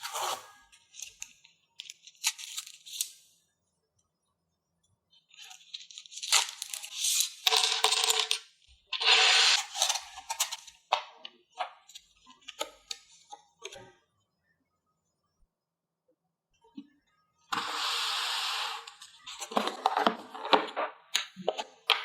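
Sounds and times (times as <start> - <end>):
packaging sliding and scraping: 17.5 - 20.8.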